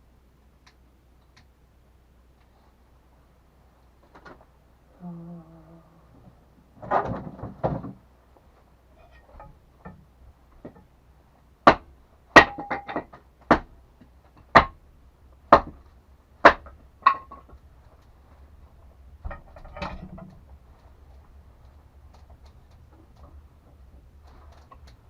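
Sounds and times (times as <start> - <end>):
soft clatter: 17.1 - 25.0.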